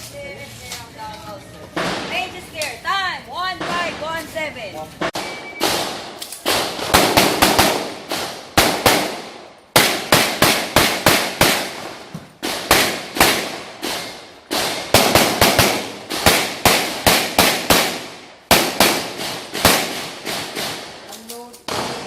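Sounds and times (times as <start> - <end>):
gunshots with echoing tail: 5.0 - 21.1, 21.7 - 22.0.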